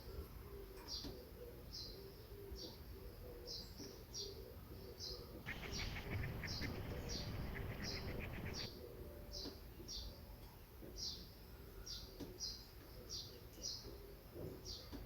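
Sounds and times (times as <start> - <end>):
rapid dry clicking: 5.5 - 8.7
small bird chirping: 5.5 - 8.7.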